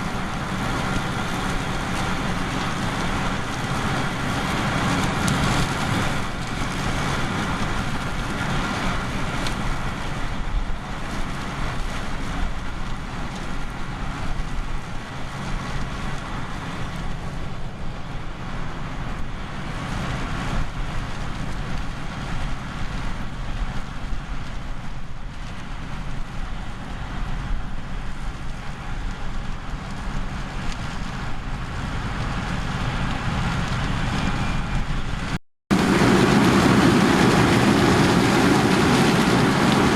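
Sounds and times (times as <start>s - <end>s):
diesel engine running: 0.0s - 24.4s, 26.0s - 39.9s
heavy farm machinery running: 0.0s - 24.4s, 25.7s - 39.9s.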